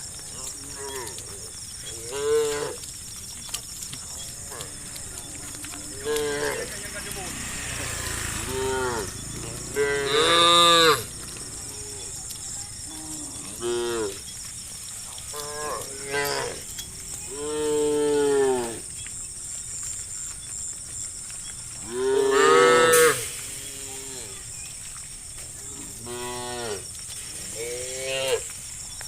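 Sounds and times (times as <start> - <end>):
cows mooing: 0.3 - 3.0, 4.1 - 14.2, 15.3 - 18.9, 21.8 - 24.4, 25.7 - 26.9, 27.5 - 28.5.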